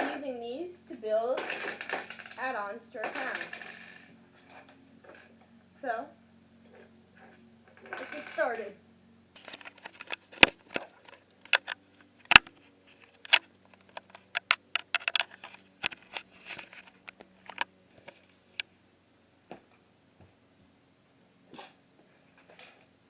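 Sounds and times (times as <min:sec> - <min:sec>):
plastic bricks clicking and clattering: 0:01.4 - 0:04.7, 0:13.3 - 0:16.8.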